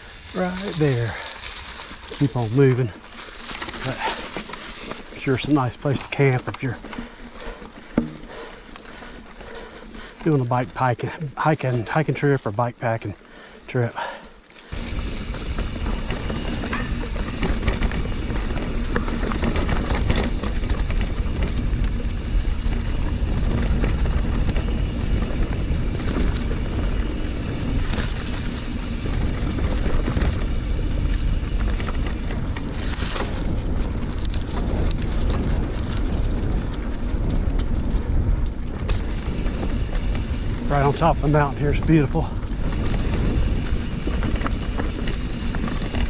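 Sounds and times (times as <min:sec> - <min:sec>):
bike tyre rumble: 0:00.0 - 0:46.0
wind buffeting microphone: 0:14.7 - 0:46.0.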